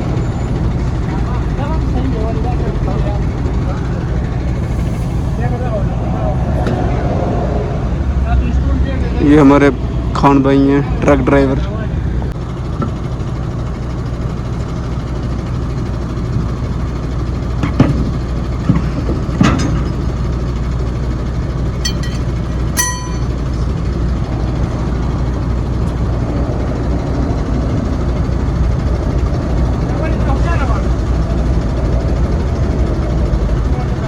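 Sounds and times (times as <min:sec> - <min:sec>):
truck engine idling: 0:00.0 - 0:06.6
short ringing clink: 0:21.8 - 0:23.8
sharp knocks: 0:21.9 - 0:23.5.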